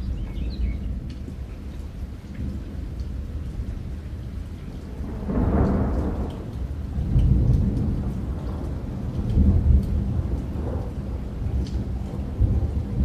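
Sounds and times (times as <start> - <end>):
rain hiss: 0.0 - 13.0
raindrop ticks: 0.0 - 13.0
rolling thunder: 4.8 - 13.0.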